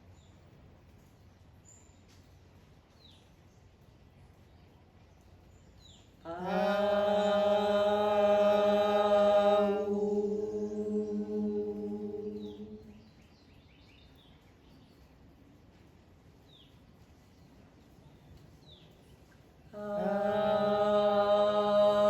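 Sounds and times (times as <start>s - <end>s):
person chanting held tone: 6.3s - 12.9s, 19.8s - 22.0s.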